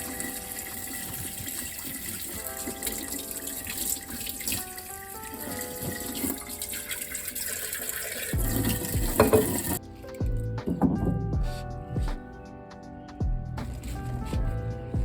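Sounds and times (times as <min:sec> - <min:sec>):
running water: 0:00.0 - 0:11.2
soft background music: 0:00.0 - 0:15.0
low thumps: 0:10.2 - 0:12.3.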